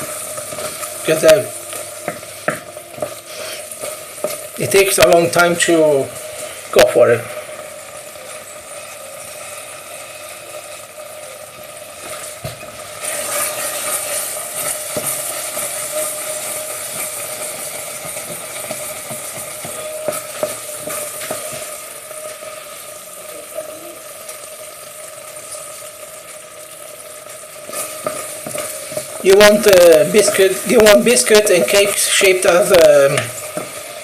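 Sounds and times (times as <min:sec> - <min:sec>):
risotto sizzling in pan: 0:00.0 - 0:34.0
spoon knocking against pan: 0:02.0 - 0:03.2.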